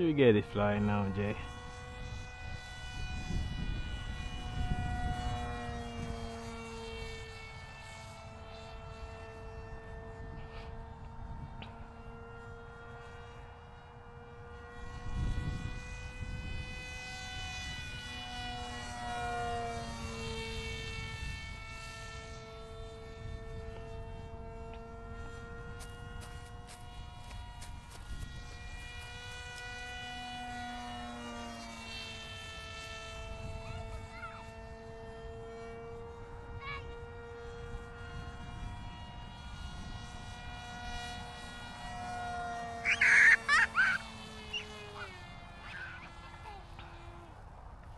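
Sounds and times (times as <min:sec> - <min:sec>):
wind rumble on microphone: 0:00.0 - 0:07.6, 0:08.5 - 0:11.9, 0:14.8 - 0:18.8, 0:19.9 - 0:29.7, 0:33.1 - 0:35.7, 0:36.5 - 0:42.0
model plane motor whining: 0:00.0 - 0:47.9
wind on microphone: 0:01.4 - 0:07.5, 0:14.9 - 0:18.8, 0:37.6 - 0:41.9.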